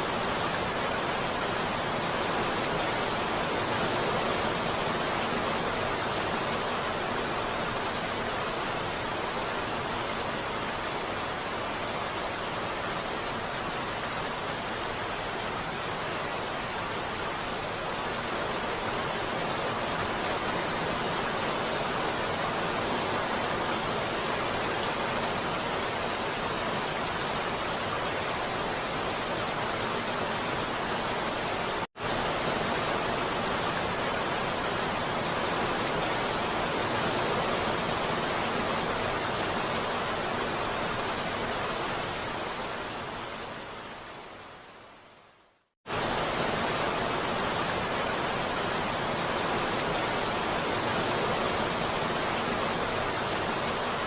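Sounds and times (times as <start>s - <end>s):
heavy rain: 0.0s - 54.0s.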